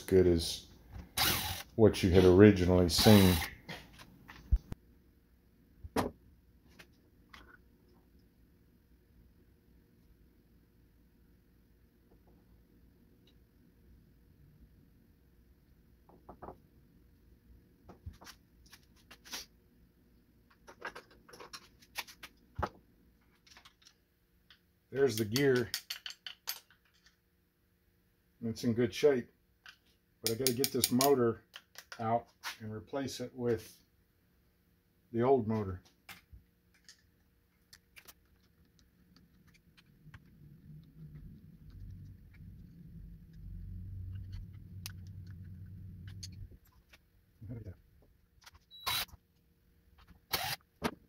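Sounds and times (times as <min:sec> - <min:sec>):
rubbing and shuffling: 0:17.9 - 0:19.6
small parts clicking and knocking: 0:20.5 - 0:22.4, 0:23.2 - 0:27.2, 0:29.6 - 0:32.1, 0:36.0 - 0:43.4.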